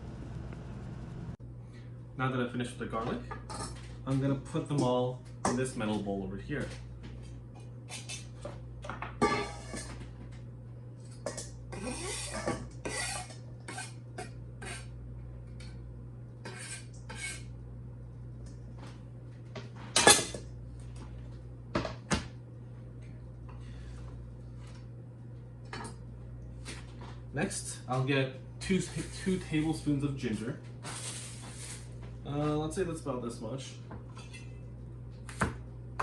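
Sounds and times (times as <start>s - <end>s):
knife scraping in metal bowl: 9.2s - 9.9s, 11.7s - 14.9s, 16.4s - 17.5s.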